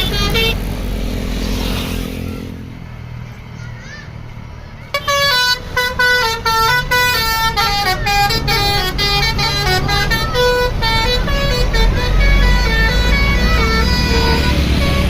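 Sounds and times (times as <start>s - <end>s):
multi-tone bus horn tune: 0.0s - 0.7s, 4.9s - 15.0s
bus engine rumbling: 0.0s - 15.0s.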